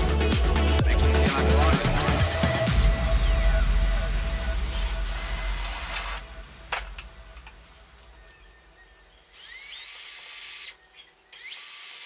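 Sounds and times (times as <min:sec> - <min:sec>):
electric drill motor whine: 0:09.2 - 0:12.0.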